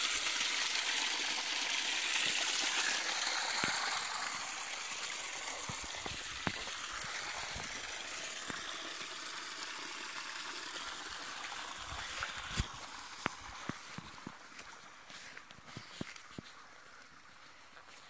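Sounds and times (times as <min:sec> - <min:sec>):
rushing water: 0:00.0 - 0:18.0.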